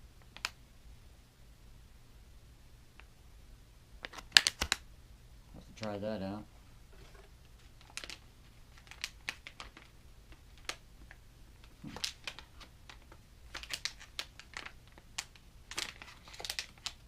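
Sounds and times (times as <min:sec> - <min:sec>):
plastic packaging crinkling: 0:06.9 - 0:17.0.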